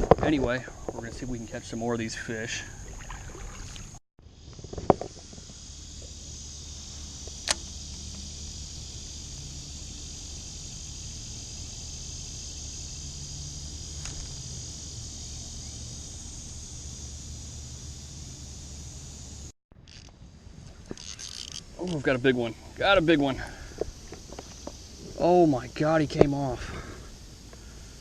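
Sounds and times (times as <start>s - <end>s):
high-pitched insect chorus: 0.1s - 28.0s
sharp click: 7.3s - 7.7s.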